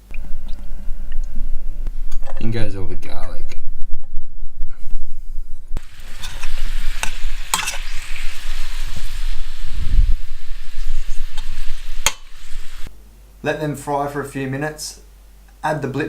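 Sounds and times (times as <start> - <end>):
potatoes sizzling in oil: 5.8 - 12.9.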